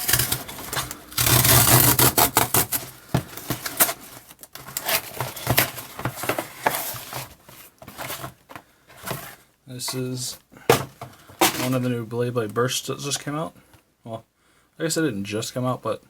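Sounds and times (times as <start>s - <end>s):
packaging ripping: 0.0s - 7.3s
packaging crinkling and rustling: 0.0s - 10.0s, 10.7s - 11.9s.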